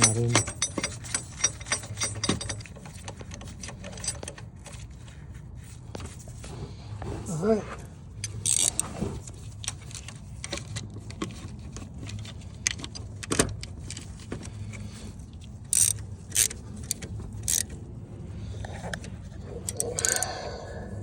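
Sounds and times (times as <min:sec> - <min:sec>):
metal tools clanking: 0:00.0 - 0:04.8, 0:08.2 - 0:11.1, 0:15.6 - 0:17.8
steady low hum: 0:13.7 - 0:21.0.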